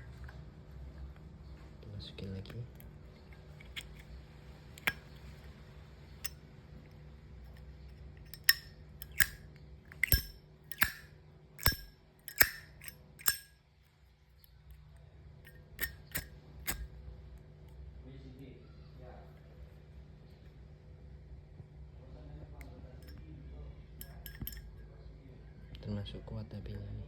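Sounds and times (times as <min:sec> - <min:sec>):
metal lighter lid clicks: 0:03.6 - 0:04.1, 0:04.8 - 0:05.1, 0:08.2 - 0:13.5, 0:15.5 - 0:16.9, 0:24.0 - 0:24.7.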